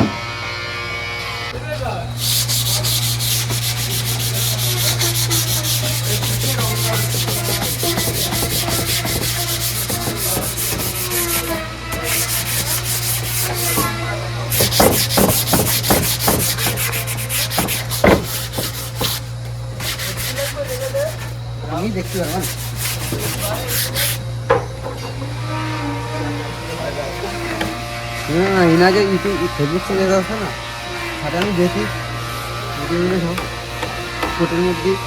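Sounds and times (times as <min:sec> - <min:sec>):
steady low hum: 0:00.1 - 0:35.0
wood being sanded: 0:01.6 - 0:35.0
sharp knocks: 0:04.9 - 0:19.2, 0:32.8 - 0:34.4.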